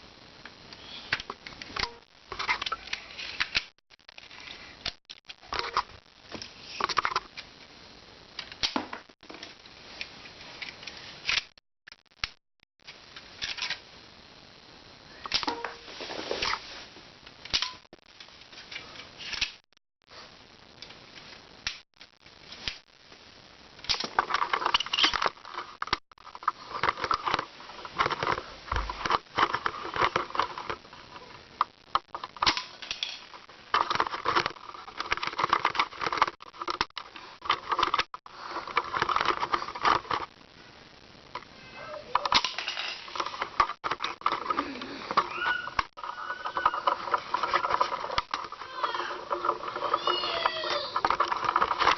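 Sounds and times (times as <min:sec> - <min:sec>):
plastic bricks clicking and rattling: 0:32.2 - 0:40.3, 0:42.2 - 0:51.9.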